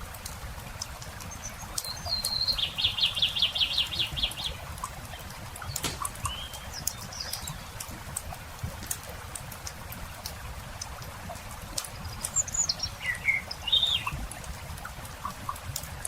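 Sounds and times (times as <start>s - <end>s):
campfire crackling: 2.6s - 16.0s
songbird trilling: 5.7s - 7.6s, 12.4s - 14.1s.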